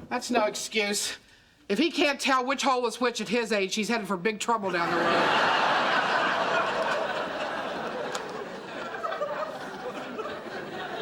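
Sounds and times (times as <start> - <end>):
studio audience laughing: 4.7 - 11.0.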